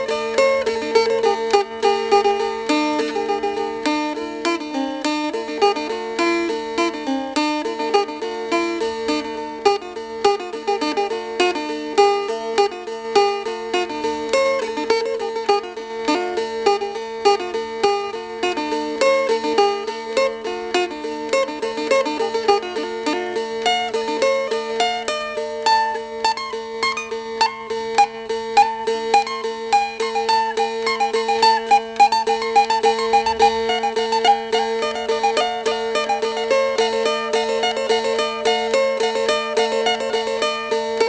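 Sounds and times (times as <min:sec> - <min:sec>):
plucked string instrument music: 0:00.0 - 0:41.0.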